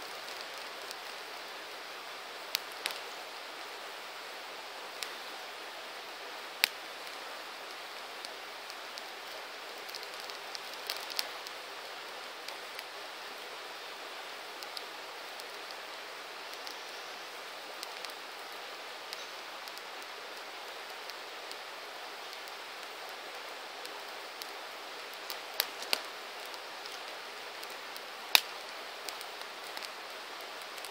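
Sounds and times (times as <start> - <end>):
campfire hissing: 0.0 - 30.9
fire crackles and pops: 0.0 - 30.9.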